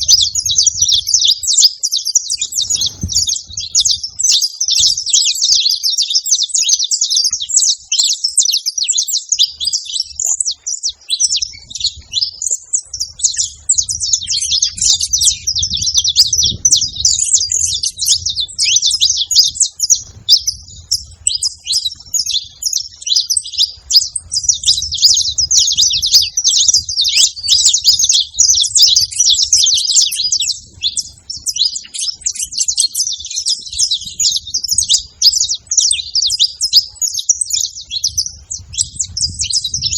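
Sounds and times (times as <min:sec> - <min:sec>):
finch singing and chattering: 0:00.0 - 0:39.9.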